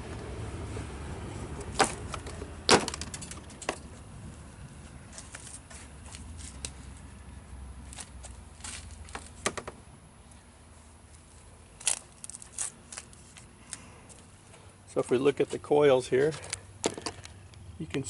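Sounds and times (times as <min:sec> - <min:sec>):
clicks and knocks of handled parts: 0:01.6 - 0:04.0, 0:16.3 - 0:18.0.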